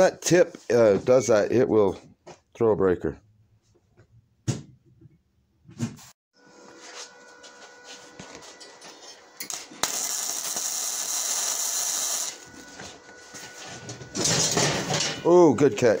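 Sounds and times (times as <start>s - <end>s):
welding gun hiss: 9.4s - 12.4s.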